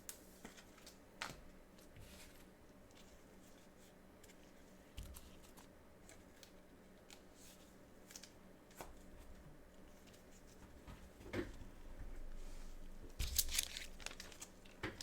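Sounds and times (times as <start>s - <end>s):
trading cards and packaging rustling: 13.2s - 15.0s.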